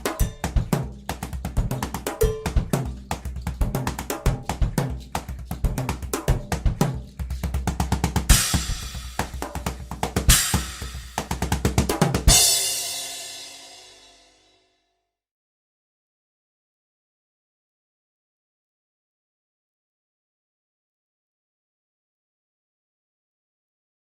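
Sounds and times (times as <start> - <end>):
drum kit music: 0.0 - 14.3
cymbal crashes: 10.3 - 11.2, 12.3 - 14.4.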